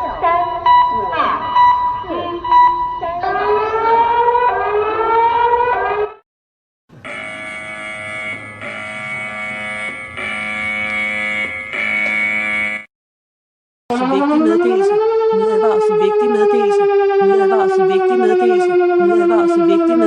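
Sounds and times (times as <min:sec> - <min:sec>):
multi-note electronic alert tone: 0:06.9 - 0:12.9
rising siren-like sweep: 0:07.0 - 0:12.9.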